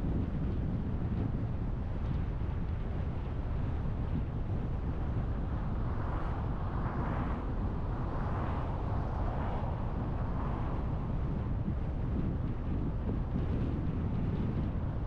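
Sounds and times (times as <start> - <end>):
car road and wind noise: 0.0 - 15.0.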